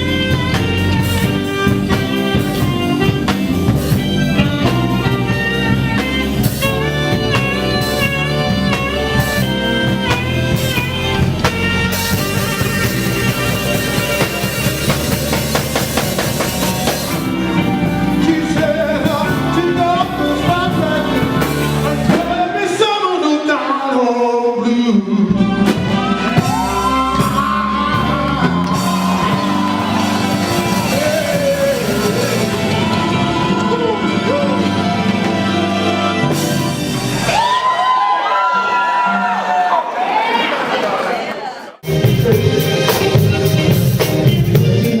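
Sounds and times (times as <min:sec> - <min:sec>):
live band music: 0:00.0 - 0:23.9, 0:24.5 - 0:39.4, 0:41.8 - 0:45.0
person singing: 0:16.9 - 0:35.5, 0:41.9 - 0:45.0.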